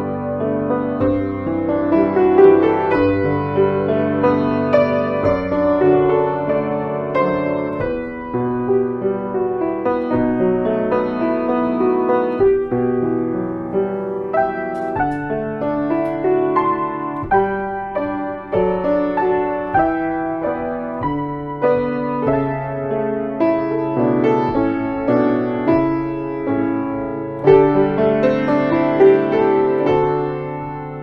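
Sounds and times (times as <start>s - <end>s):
solo piano piece: 0.0s - 31.0s.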